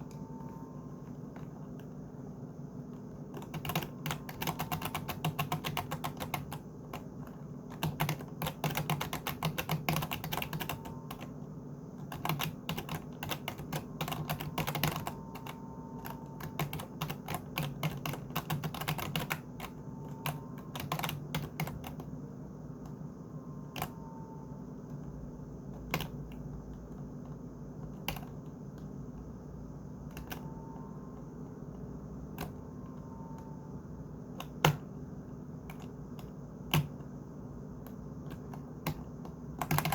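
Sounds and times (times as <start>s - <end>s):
computer keyboard typing: 2.9s - 11.4s, 12.0s - 23.0s, 23.7s - 24.0s, 24.8s - 29.2s, 30.0s - 33.7s, 34.3s - 35.0s, 35.6s - 37.2s, 37.8s - 39.9s.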